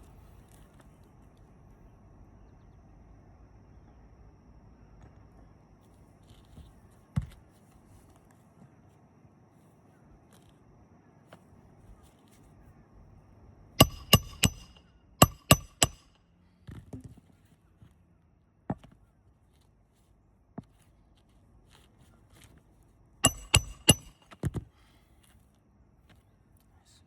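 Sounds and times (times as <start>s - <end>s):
hammer striking nails: 13.8s - 16.2s, 23.2s - 24.5s.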